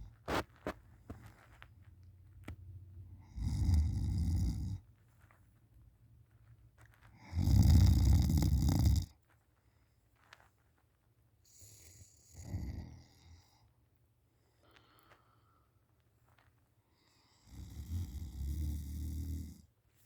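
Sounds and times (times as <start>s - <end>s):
quiet breathing: 11.5s - 16.1s, 16.8s - 18.3s.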